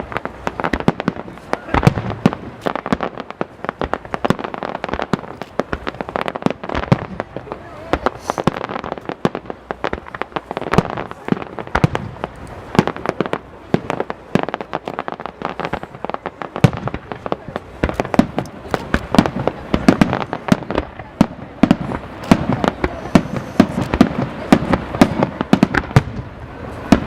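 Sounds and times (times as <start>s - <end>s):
firework bursts and crackling: 0.0s - 27.0s.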